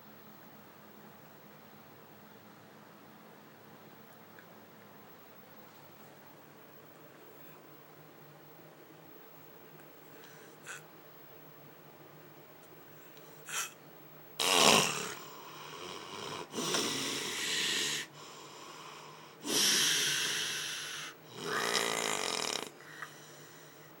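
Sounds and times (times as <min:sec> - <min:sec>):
person snoring heavily: 0:13.5 - 0:13.8, 0:14.4 - 0:23.5.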